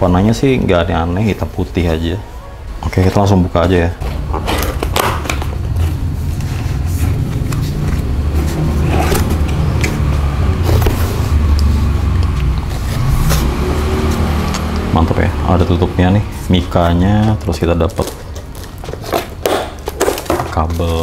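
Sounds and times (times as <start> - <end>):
packaging rustling: 4.0 - 11.4, 16.6 - 21.0
cardboard box being opened: 6.4 - 10.0.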